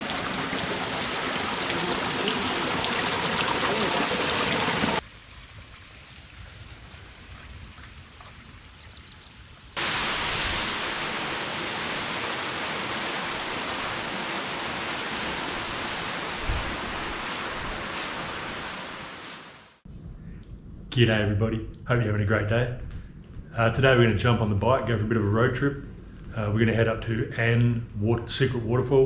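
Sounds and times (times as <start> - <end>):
water rushing: 0.0 - 6.5, 9.8 - 19.8.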